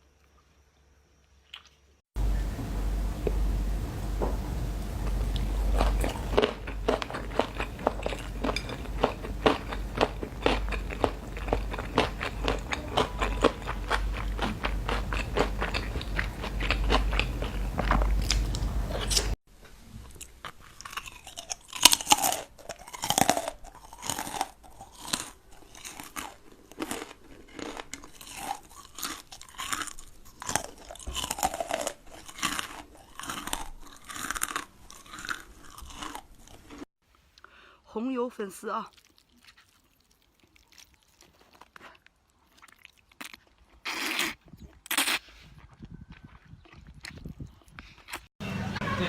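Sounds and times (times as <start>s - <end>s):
crunching and chewing food: 1.2s - 2.3s, 4.1s - 36.9s, 38.8s - 48.3s
low hum: 2.2s - 19.4s.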